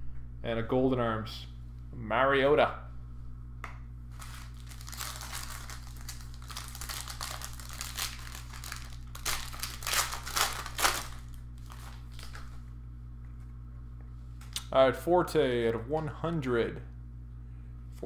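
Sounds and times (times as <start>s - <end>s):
plastic packaging crinkling: 4.1s - 12.6s.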